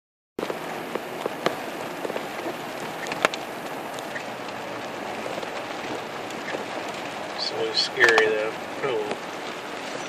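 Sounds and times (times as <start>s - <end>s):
water rushing against car: 0.4s - 10.0s.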